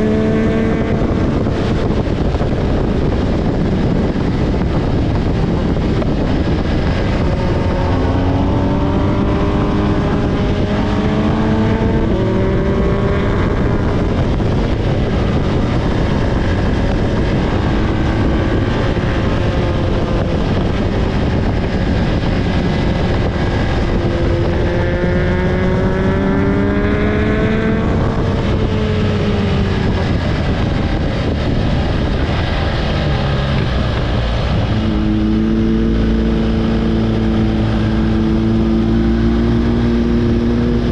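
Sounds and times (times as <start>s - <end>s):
vehicle engine revving: 0.0s - 40.9s.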